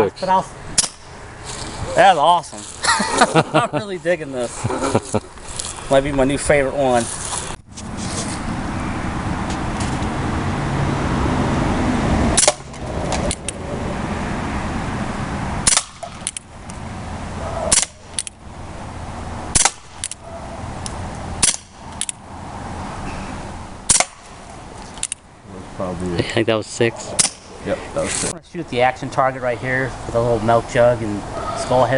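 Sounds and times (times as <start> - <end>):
air pistol shot pops: 0.8 - 1.1, 12.4 - 13.4, 15.6 - 16.4, 17.7 - 18.2, 19.5 - 20.2, 21.4 - 21.8, 23.9 - 24.3, 27.2 - 27.5.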